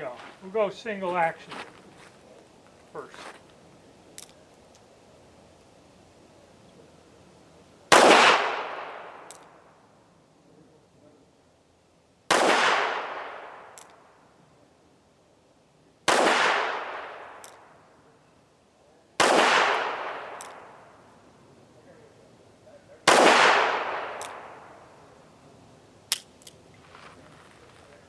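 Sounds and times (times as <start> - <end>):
sharp light clicks: 13.7 - 14.0, 17.4 - 17.6, 20.3 - 20.6, 24.1 - 24.4, 26.1 - 26.6.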